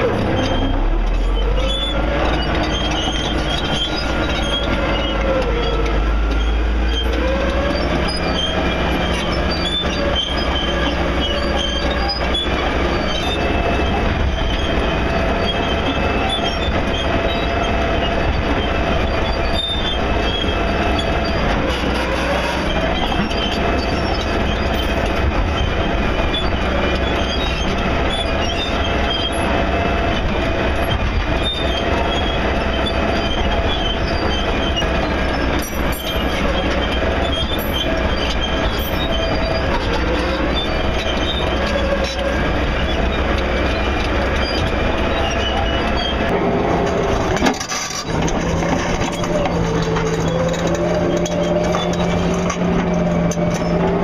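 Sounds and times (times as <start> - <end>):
excavator engine and hydraulics: 0.0 - 54.0.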